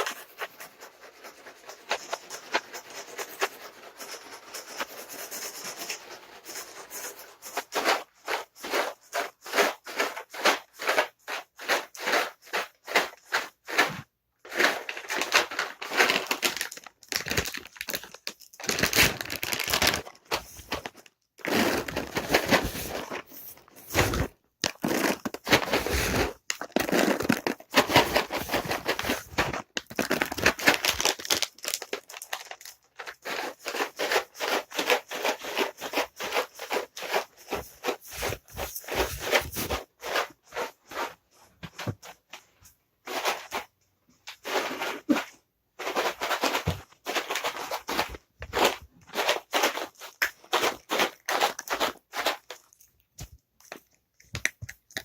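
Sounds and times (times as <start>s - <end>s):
cat treats rattling in container: 14.5s - 42.1s, 45.8s - 55.0s.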